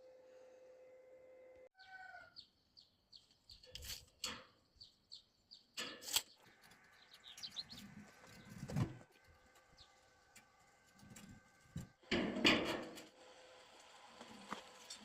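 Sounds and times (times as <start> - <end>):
small birds chirping: 1.8 - 10.1.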